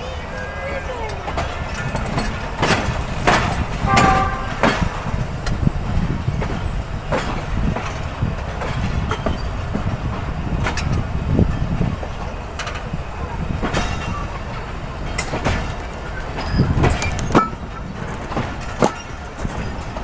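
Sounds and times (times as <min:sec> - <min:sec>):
rail joint clicks: 0:00.0 - 0:20.0
train wheels rumbling on track: 0:00.0 - 0:20.0.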